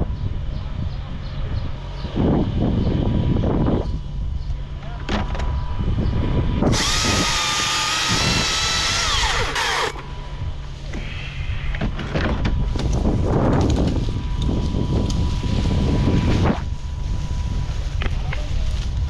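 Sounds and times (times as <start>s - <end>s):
low rumble: 0.0s - 19.0s
power tool motor whining: 6.6s - 10.2s.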